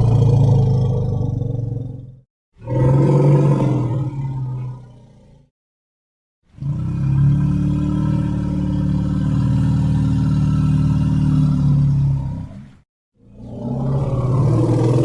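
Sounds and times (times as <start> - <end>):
elephant low rumbling call: 13.3 - 15.0.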